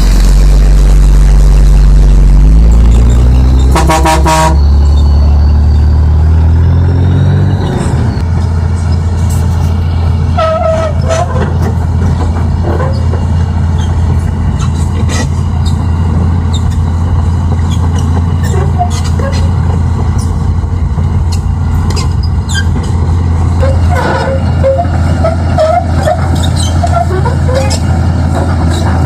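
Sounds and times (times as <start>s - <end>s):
truck engine droning: 0.0s - 29.0s
horn toots: 3.5s - 5.1s.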